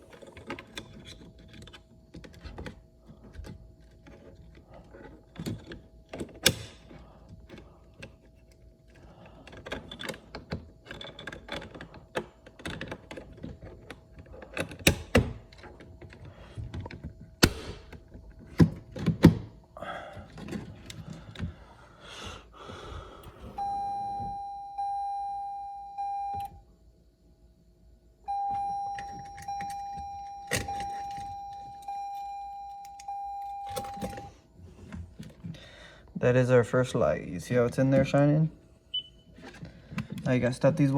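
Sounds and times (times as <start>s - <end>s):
car warning chime dings: 23.6s - 26.6s, 28.3s - 34.4s.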